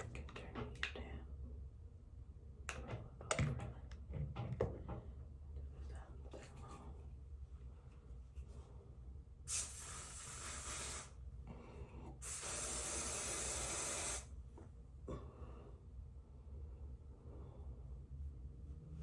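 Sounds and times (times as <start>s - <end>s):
hissing spray of hair product: 9.5s - 11.2s, 12.2s - 14.3s.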